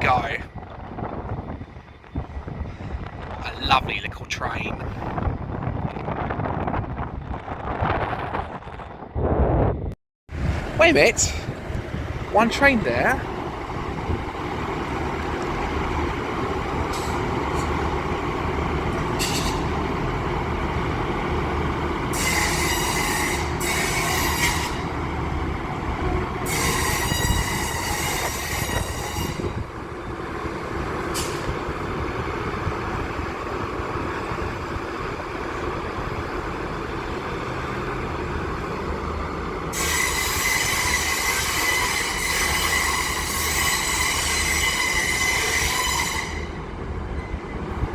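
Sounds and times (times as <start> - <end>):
low train rumble: 0.0 - 47.9
train wheels squealing on rails: 16.9 - 18.0, 19.0 - 19.8, 22.1 - 25.0, 26.4 - 29.7, 31.0 - 31.7, 39.7 - 47.9.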